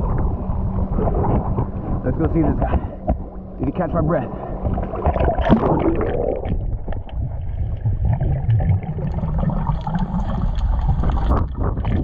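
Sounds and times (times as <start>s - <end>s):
underwater rumble and bubbling: 0.0s - 12.0s
faint clicks and crackles: 4.6s - 12.0s.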